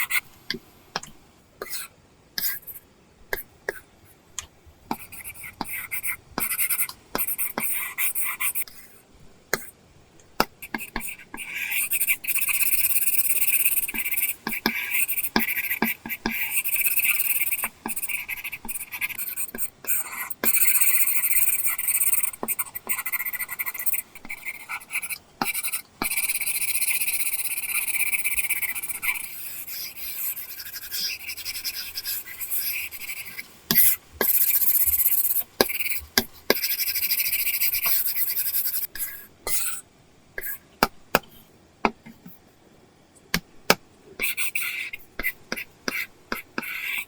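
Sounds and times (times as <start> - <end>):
stylus tapping on screen: 0.5 - 1.2, 40.4 - 42.4
stylus scratching on screen: 10.6 - 39.8.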